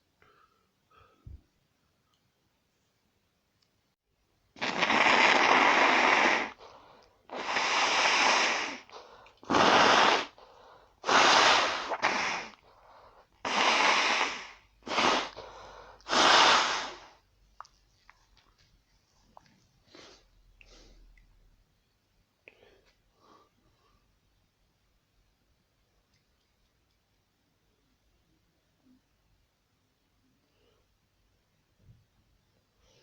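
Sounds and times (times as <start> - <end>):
person blowing nose: 4.6 - 12.6, 13.4 - 17.2.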